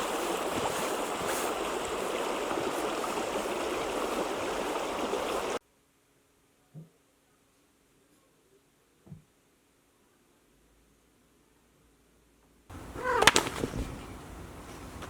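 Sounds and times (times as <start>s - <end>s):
stream water running: 0.0s - 5.6s, 12.7s - 15.0s.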